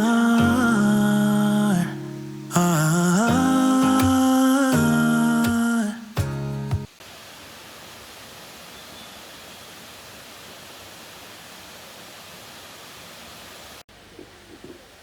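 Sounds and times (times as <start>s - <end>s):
rush of running water: 6.8s - 14.0s.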